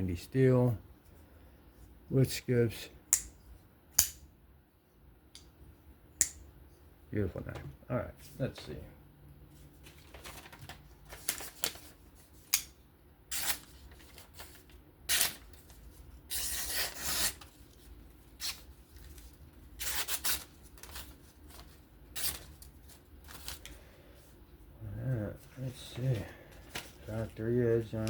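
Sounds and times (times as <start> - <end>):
knife slicing through paper: 16.3 - 17.5.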